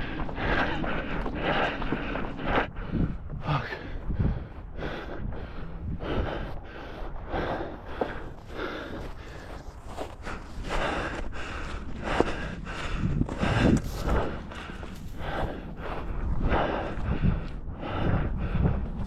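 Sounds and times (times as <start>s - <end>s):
person breathing hard: 0.0s - 19.0s
footsteps: 6.2s - 17.6s.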